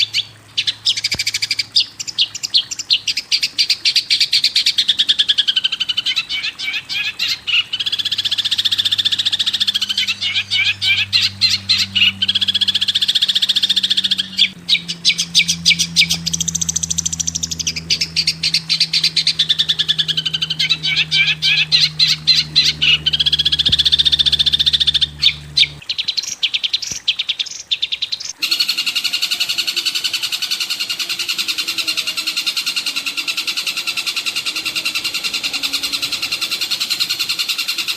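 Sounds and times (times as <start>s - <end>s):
songbird chirping and trilling: 0.0s - 37.9s
steady low hum: 7.2s - 25.9s.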